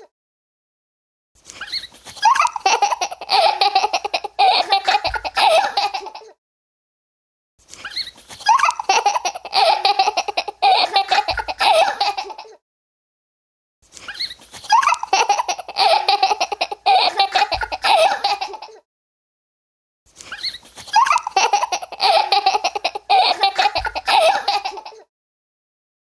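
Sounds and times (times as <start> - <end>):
little girl laughing: 1.7 - 6.4, 7.9 - 12.6, 14.1 - 18.8, 20.4 - 25.1.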